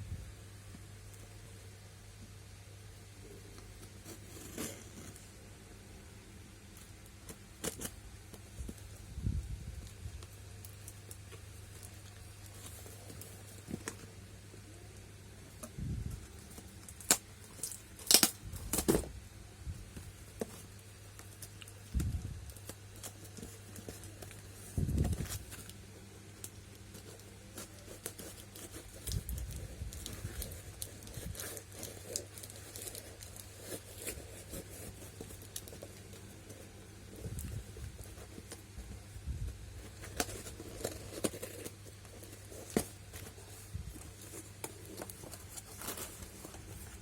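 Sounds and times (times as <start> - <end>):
steady low hum: 0.0 - 47.0
tape tearing: 16.6 - 19.1
plastic packaging crinkling: 26.4 - 38.7, 39.7 - 47.0.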